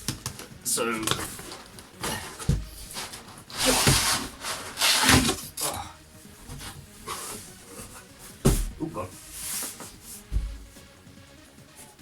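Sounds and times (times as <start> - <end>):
packing rustling: 0.0 - 10.8
cardboard rubbing scrapes: 0.9 - 5.6, 6.2 - 10.8
dull knock: 10.3 - 10.7.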